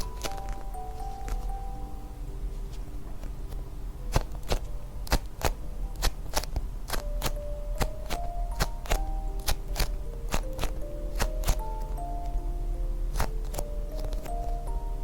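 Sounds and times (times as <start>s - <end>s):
soft background music: 0.0s - 15.0s.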